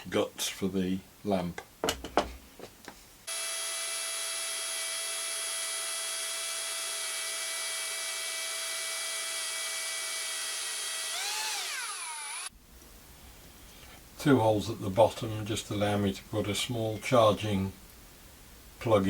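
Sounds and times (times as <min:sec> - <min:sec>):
power drill whining: 0:03.3 - 0:12.5.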